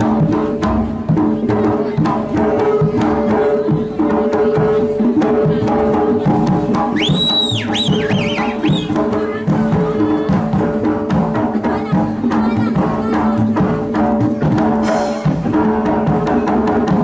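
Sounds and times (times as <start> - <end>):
hand drums playing fast: 0.0 - 17.0
high warbling whistle: 7.0 - 9.0.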